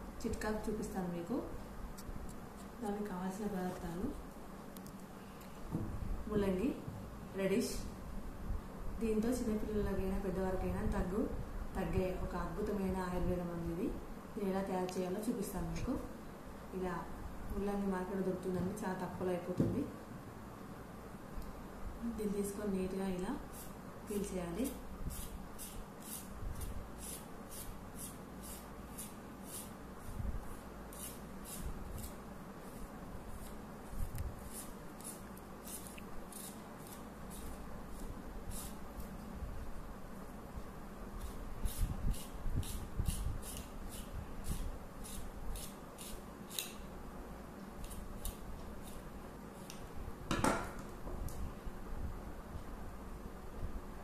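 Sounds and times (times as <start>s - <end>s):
scraping peel strokes: 25.0s - 39.1s, 41.2s - 46.8s, 47.8s - 49.8s.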